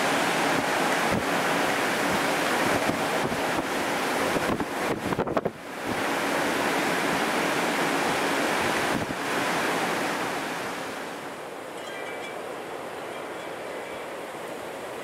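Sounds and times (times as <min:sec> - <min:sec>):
wind buffeting microphone: 0:00.0 - 0:07.3
snowstorm wind blowing hard: 0:00.0 - 0:11.6.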